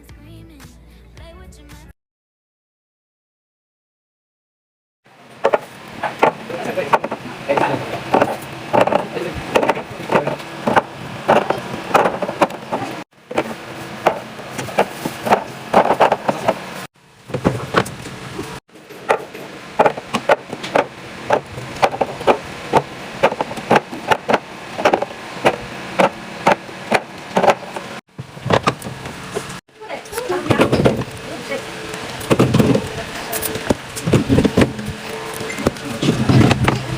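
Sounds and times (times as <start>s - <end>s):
food containers clacking and knocking: 5.4s - 16.7s, 18.8s - 31.1s, 32.2s - 36.9s.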